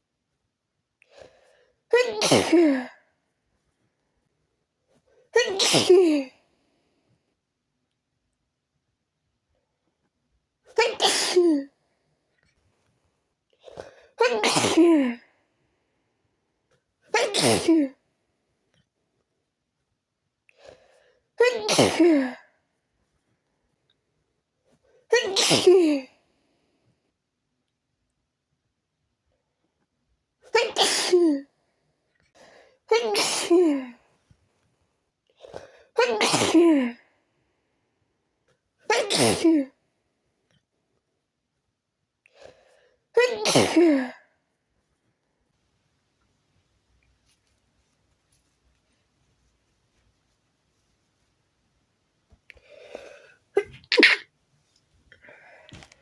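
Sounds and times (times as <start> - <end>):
faint in-breath: 1.1 - 1.8, 20.5 - 21.3, 42.3 - 43.0, 52.5 - 53.4, 55.1 - 56.0
woman sneezing: 1.9 - 3.0, 5.4 - 6.4, 10.7 - 11.7, 13.9 - 15.2, 17.1 - 18.0, 21.4 - 22.4, 25.1 - 26.1, 30.5 - 31.5, 32.9 - 34.0, 35.7 - 37.0, 38.9 - 39.8, 43.2 - 44.2, 53.0 - 54.2.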